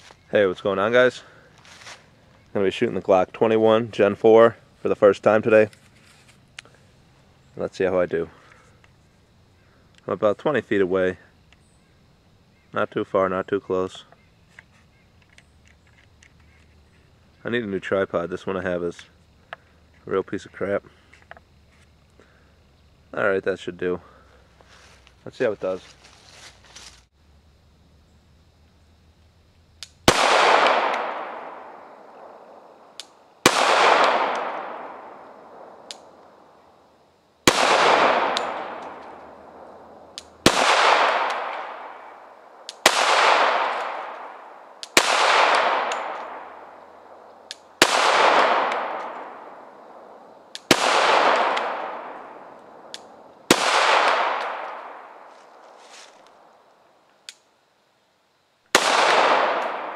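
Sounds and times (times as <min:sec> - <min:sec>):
pistol shots: 0:30.0 - 0:36.1, 0:37.4 - 0:42.1, 0:42.8 - 0:47.2, 0:47.8 - 0:55.3, 0:58.7 - 0:59.9.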